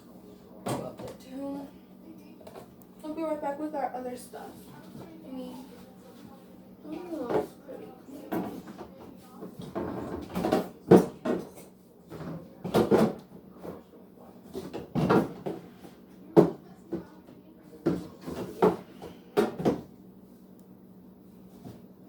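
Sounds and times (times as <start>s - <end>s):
knocks and clunks of groceries: 0.6s - 1.2s, 7.2s - 7.6s, 8.2s - 19.9s.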